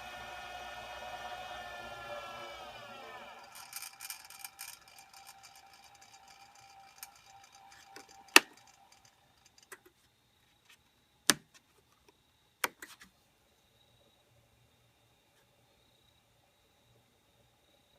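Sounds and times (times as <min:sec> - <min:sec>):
lathe motor whining: 0:00.0 - 0:09.8.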